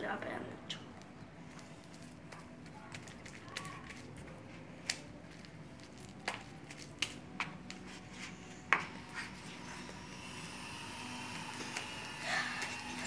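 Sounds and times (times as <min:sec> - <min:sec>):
slime being kneaded by hand: 0:01.5 - 0:09.6.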